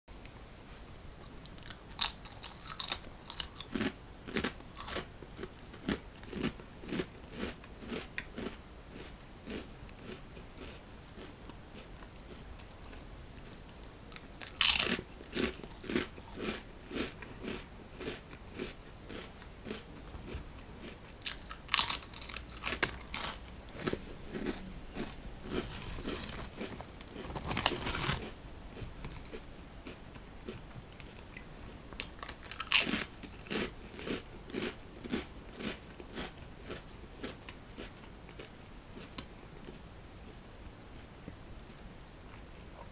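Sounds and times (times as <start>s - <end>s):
person chewing crunchy snack: 1.2s - 39.8s
loud crunchy bites: 1.6s - 11.3s, 14.4s - 19.9s, 20.8s - 28.4s, 32.0s - 36.8s.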